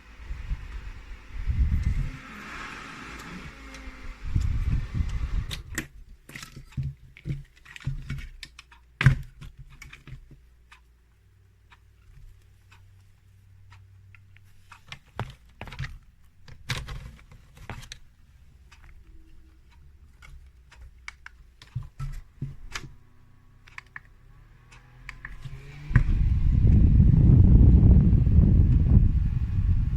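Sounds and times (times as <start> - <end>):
low handling rumble: 0.0 - 6.1, 25.3 - 29.9
objects clicking and knocking: 5.5 - 10.4, 18.7 - 23.0.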